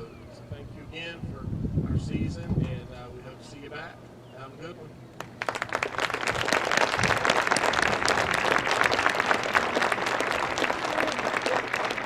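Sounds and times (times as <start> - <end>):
audience applauding: 5.2 - 12.0.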